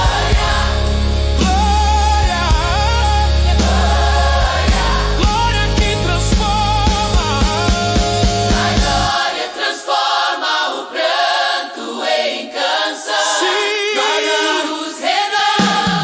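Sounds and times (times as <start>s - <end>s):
drums and bass: 0.0s - 9.1s, 15.6s - 16.0s
gospel choir singing: 0.0s - 16.0s.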